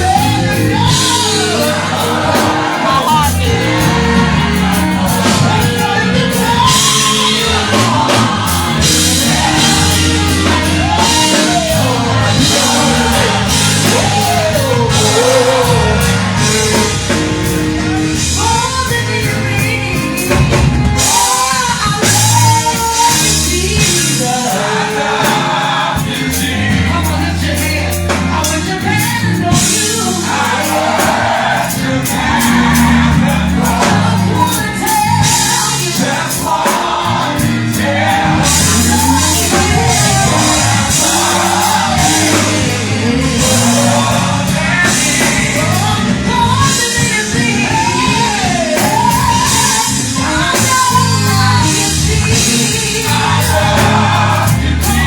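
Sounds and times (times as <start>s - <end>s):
person singing: 0.0s - 4.2s
band with bass and drums: 0.0s - 55.0s.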